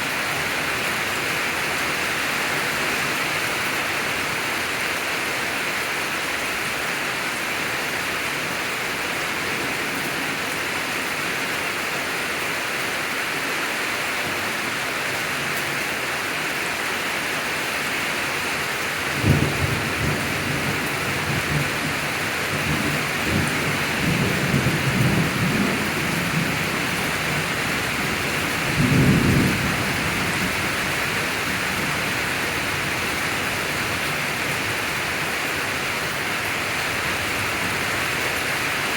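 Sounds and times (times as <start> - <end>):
rain hiss: 0.0 - 38.9
thunder rumbling: 19.1 - 33.9.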